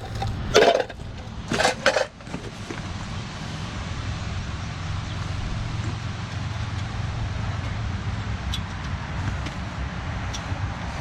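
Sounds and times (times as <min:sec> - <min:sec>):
metal tools clanking: 0:00.0 - 0:02.8
steady engine hum: 0:00.0 - 0:11.0.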